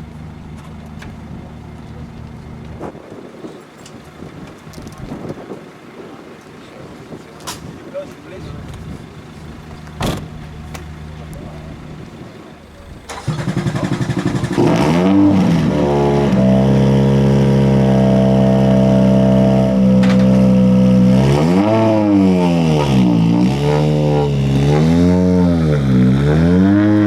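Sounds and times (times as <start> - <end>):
rally car engine revving: 11.6 - 27.0.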